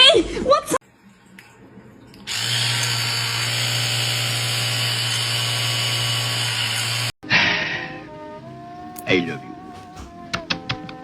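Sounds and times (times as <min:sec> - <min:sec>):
small electric motor whirring: 0:02.3 - 0:07.2.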